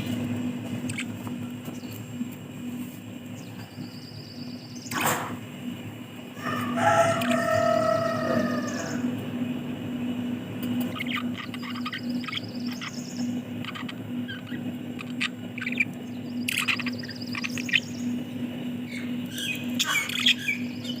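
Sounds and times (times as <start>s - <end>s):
steady low hum: 0.0s - 21.0s
budgerigars chirping: 0.8s - 1.2s, 10.8s - 18.2s, 18.9s - 21.0s.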